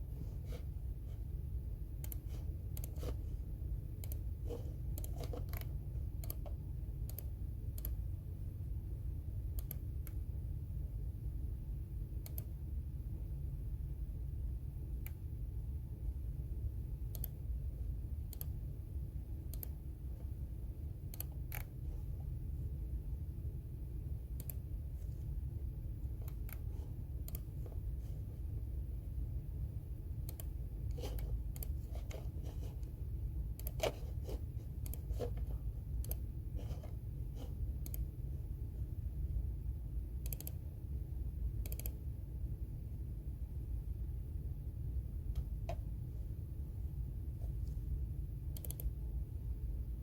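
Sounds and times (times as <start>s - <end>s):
low background hum: 0.0s - 50.0s.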